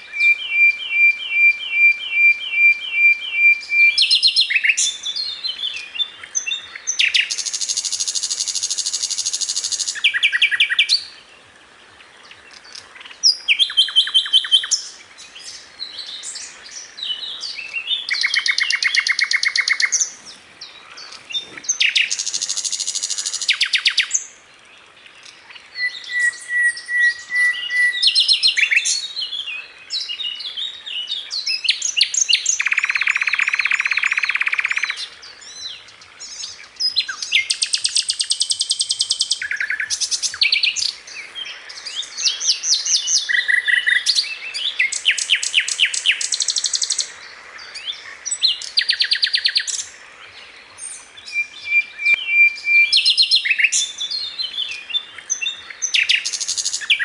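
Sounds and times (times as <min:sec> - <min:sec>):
bird chirps and trills: 0:12.2 - 0:24.4, 0:25.2 - 0:57.0.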